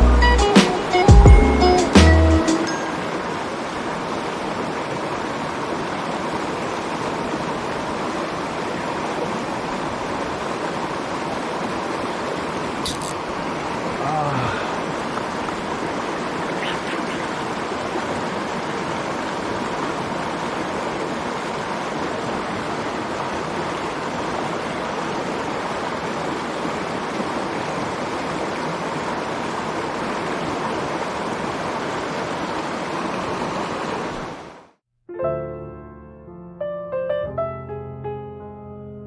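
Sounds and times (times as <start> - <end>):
stream water rushing: 0.2 - 34.8.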